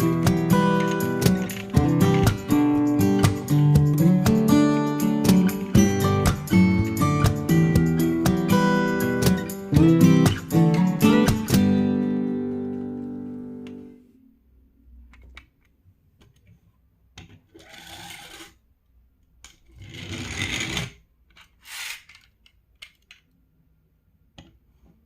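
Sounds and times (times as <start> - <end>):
acoustic guitar chord ringing: 0.0 - 13.9.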